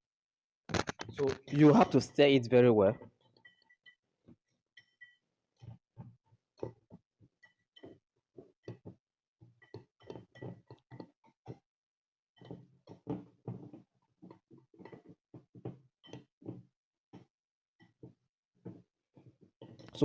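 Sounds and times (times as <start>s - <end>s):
spoon stirring thick mix: 3.0s - 11.7s.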